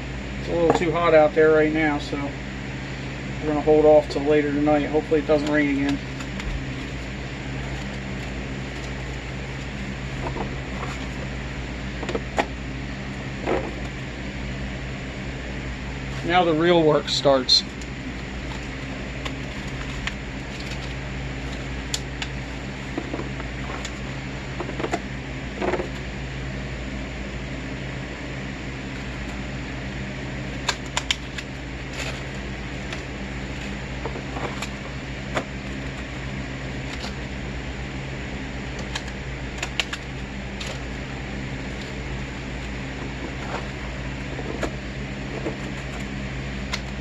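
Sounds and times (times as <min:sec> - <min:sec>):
machine humming: 0:00.0 - 0:47.0.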